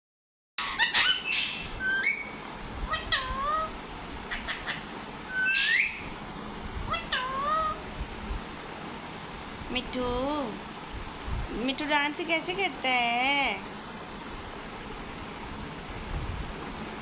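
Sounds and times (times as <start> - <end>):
parrot whistled calls: 0.6 - 3.7, 4.3 - 6.1
parrot squawking: 0.6 - 6.1, 6.9 - 7.8.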